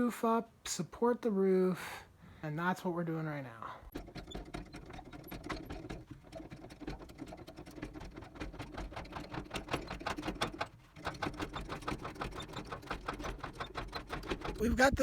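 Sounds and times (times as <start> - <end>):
rapid mechanical clicking: 3.9 - 15.0.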